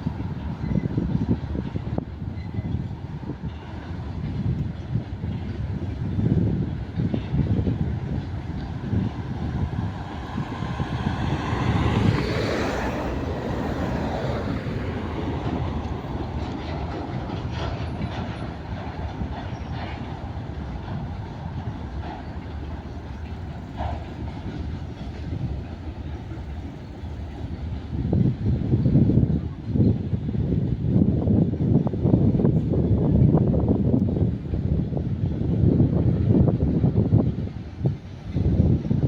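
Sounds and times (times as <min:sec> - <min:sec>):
freight train rumbling past: 0:00.0 - 0:39.0
wheels clicking over rail joints: 0:03.4 - 0:28.4.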